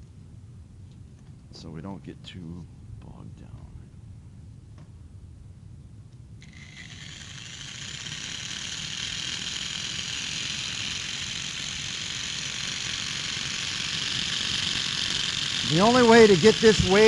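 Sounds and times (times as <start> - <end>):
wave machine motor whirring: 6.4 - 17.0.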